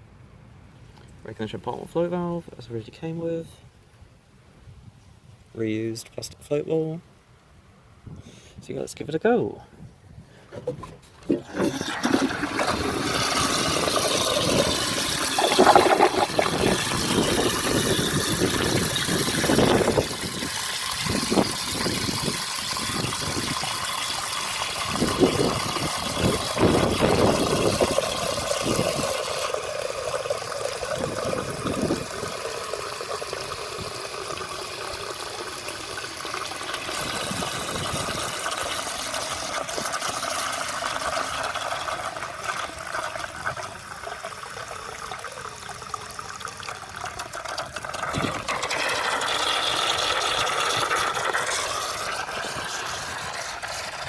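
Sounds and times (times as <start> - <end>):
toilet cistern flushing: 10.6 - 54.0
water gurgling and splashing: 11.2 - 54.0
cistern refilling hiss: 11.5 - 54.0.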